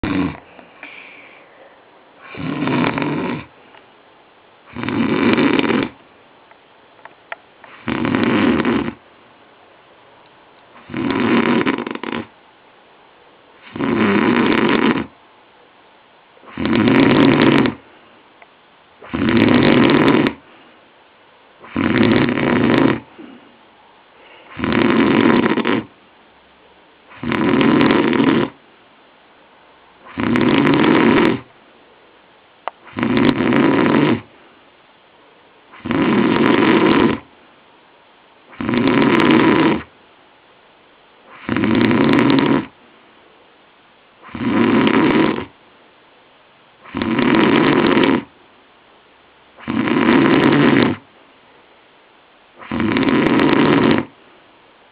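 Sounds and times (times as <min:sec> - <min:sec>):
man snoring loudly: 0:00.0 - 0:00.4, 0:02.2 - 0:03.5, 0:04.7 - 0:06.0, 0:07.8 - 0:09.0, 0:10.8 - 0:12.3, 0:13.6 - 0:15.2, 0:16.5 - 0:17.8, 0:19.0 - 0:20.4, 0:21.6 - 0:23.2, 0:24.5 - 0:25.9, 0:27.1 - 0:28.6, 0:30.0 - 0:31.5, 0:32.8 - 0:34.3, 0:35.8 - 0:37.3, 0:38.5 - 0:39.9, 0:41.3 - 0:42.7, 0:44.2 - 0:45.5, 0:46.8 - 0:48.3, 0:49.6 - 0:51.0, 0:52.6 - 0:54.1.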